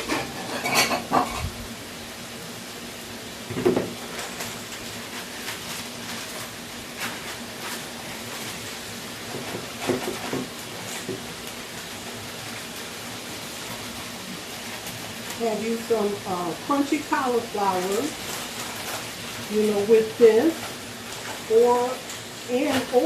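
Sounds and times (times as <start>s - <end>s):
dishes clattering: 0.0s - 1.6s
steady hiss: 0.0s - 23.0s.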